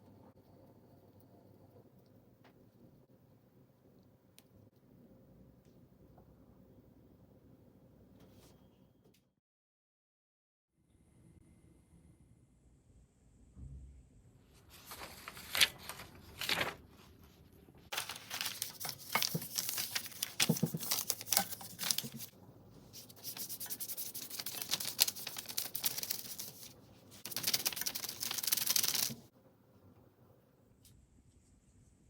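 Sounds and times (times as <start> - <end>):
rubbing and scraping food preparation: 16.5 - 29.3.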